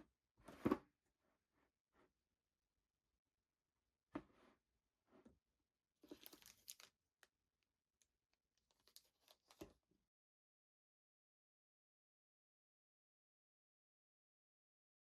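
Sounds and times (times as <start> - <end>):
packaging crinkling and tearing: 6.1 - 7.0, 8.6 - 9.7.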